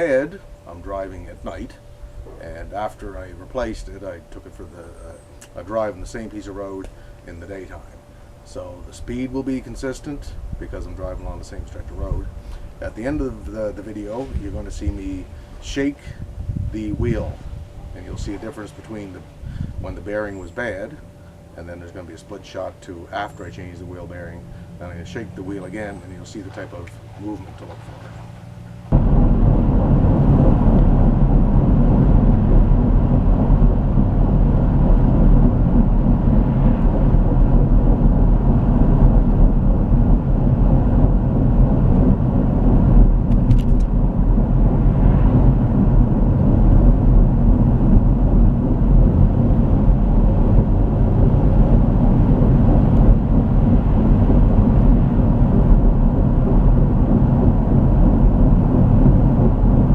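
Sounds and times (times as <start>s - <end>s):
van engine and road noise: 0.0s - 59.9s.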